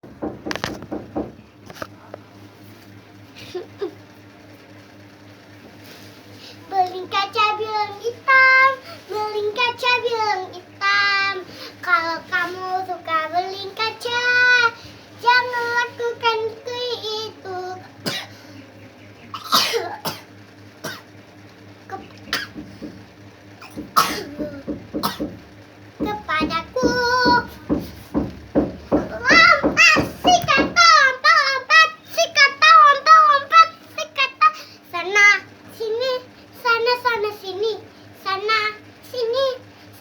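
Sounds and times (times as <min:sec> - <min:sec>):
girl singing: 0:06.6 - 0:17.9, 0:26.0 - 0:28.2, 0:28.9 - 0:39.6
girl coughing: 0:18.0 - 0:18.4, 0:19.3 - 0:21.1, 0:22.3 - 0:22.6, 0:23.6 - 0:25.4.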